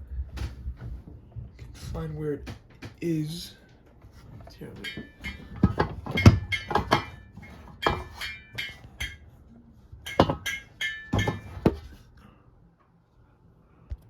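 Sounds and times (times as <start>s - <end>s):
metallic clinks and knocks: 4.2s - 9.4s, 10.0s - 12.0s.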